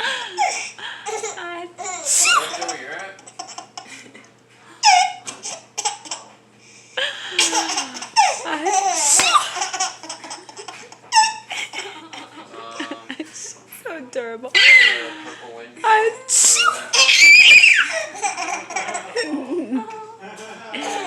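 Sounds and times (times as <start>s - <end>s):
baby laughing: 0.0s - 3.9s, 4.8s - 6.3s, 7.3s - 12.8s, 14.6s - 15.1s, 16.6s - 19.4s.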